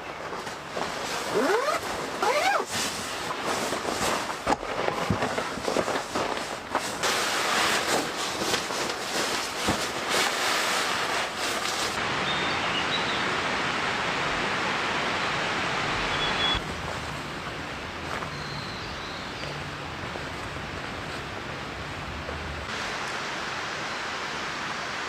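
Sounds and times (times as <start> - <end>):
rain hiss: 6.5 - 25.0.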